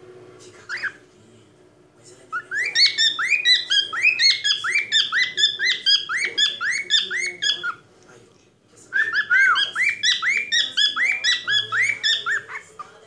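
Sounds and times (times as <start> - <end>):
cockatiel singing: 0.6 - 1.0, 2.3 - 7.8, 8.9 - 13.0.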